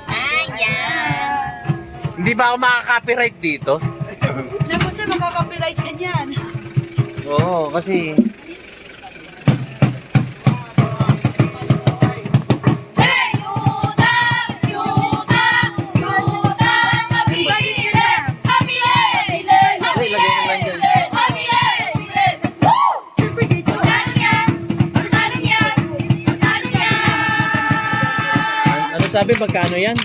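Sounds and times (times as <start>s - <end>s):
song with singing over beat: 13.0s - 29.3s.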